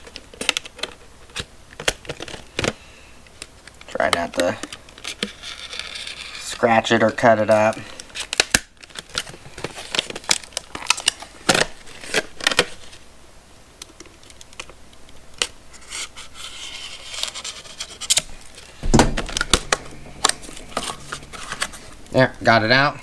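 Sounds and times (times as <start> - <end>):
packaging crinkling: 3.6 - 13.0, 13.8 - 23.0
knife cutting packaging: 15.7 - 18.6
thump: 18.8 - 22.1.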